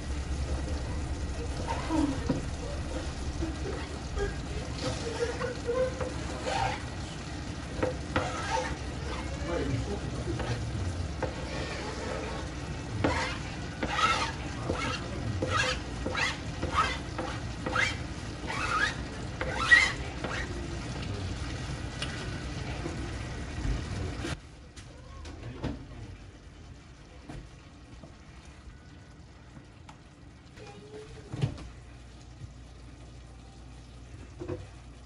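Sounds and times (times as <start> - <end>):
food sizzling in a pan: 0.0 - 24.4
stirring scraping strokes: 1.5 - 20.7.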